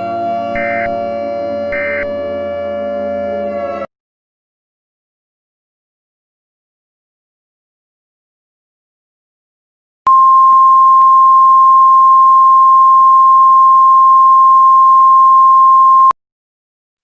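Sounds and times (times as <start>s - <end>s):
loud steady beep: 0.5s - 1.0s, 1.7s - 2.1s, 10.1s - 16.2s.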